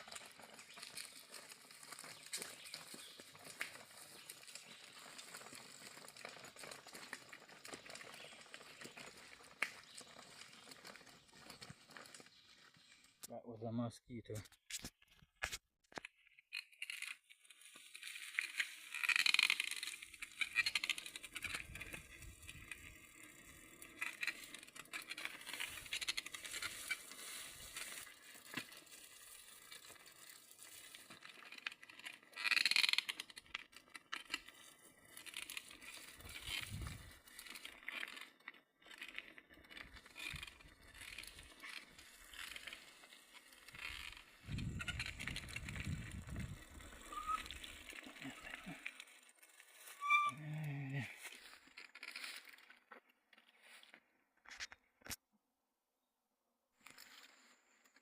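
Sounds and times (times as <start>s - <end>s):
footsteps on dry leaves: 26.3s - 30.8s.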